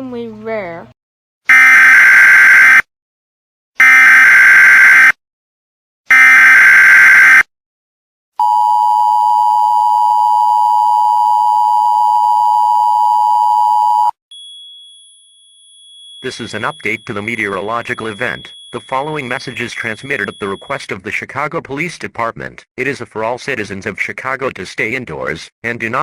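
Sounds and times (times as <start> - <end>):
shrill digital data tones: 16.2 - 20.8
two-tone attention signal: 16.2 - 20.8.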